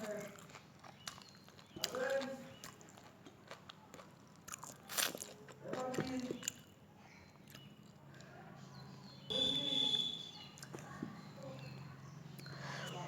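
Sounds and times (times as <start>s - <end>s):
person chewing: 0.0s - 6.7s, 7.3s - 8.3s.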